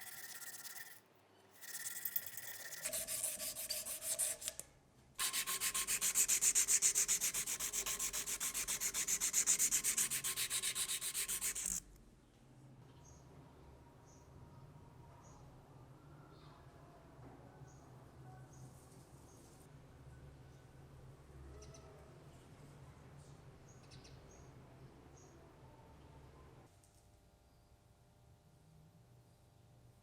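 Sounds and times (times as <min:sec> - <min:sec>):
abrasive rubbing on steel blade: 0:00.0 - 0:01.0, 0:01.6 - 0:04.6, 0:05.2 - 0:11.8.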